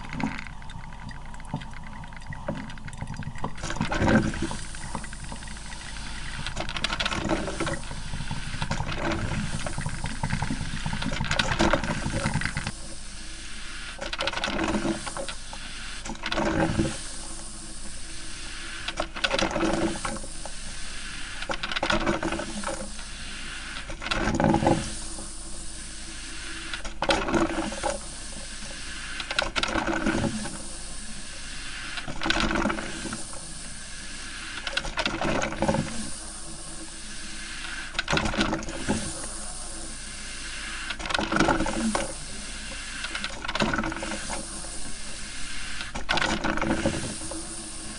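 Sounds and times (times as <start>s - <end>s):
coffee maker hissing and gurgling: 0.0s - 47.9s.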